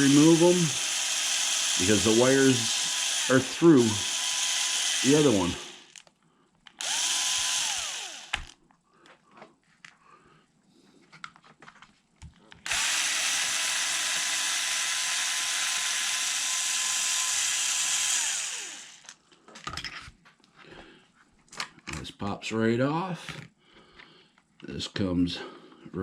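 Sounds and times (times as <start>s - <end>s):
power driver motor whine: 0.0s - 6.0s, 6.8s - 8.6s, 12.6s - 19.1s.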